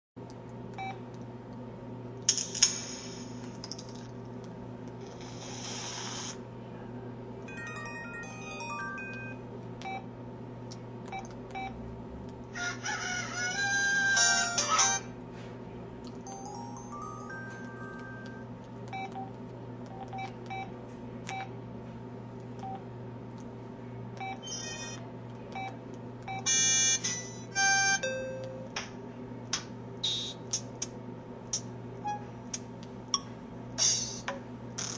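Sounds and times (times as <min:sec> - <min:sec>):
steady low hum: 0:00.2 - 0:34.9
hiss: 0:05.3 - 0:06.4.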